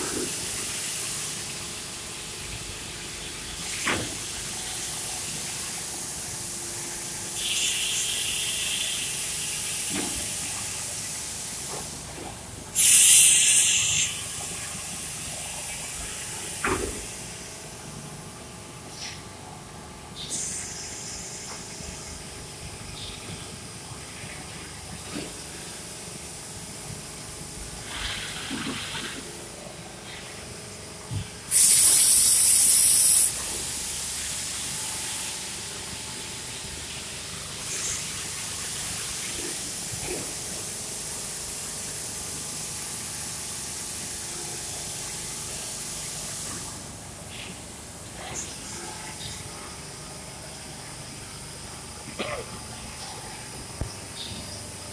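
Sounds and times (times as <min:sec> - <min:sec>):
air hissing from machine: 0:03.0 - 0:17.8, 0:20.2 - 0:22.4, 0:31.4 - 0:47.5
loud blast of air: 0:12.8 - 0:14.2, 0:31.5 - 0:33.4.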